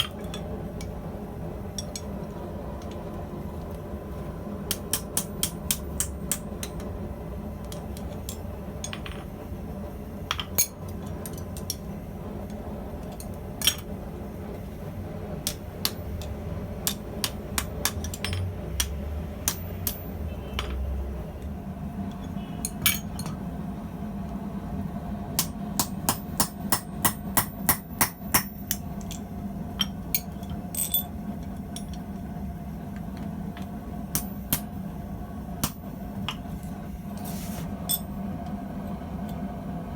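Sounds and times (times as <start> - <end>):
steady low hum: 0.0 - 39.9
hammer striking steel on anvil: 4.7 - 6.8, 25.4 - 28.8.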